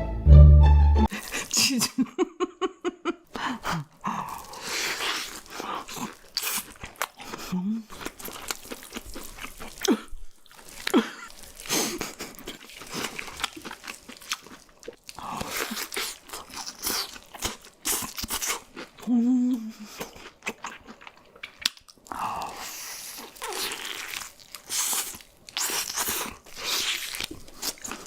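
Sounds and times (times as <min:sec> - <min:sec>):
crunchy bites and chewing: 0:04.3 - 0:11.7, 0:20.0 - 0:28.0.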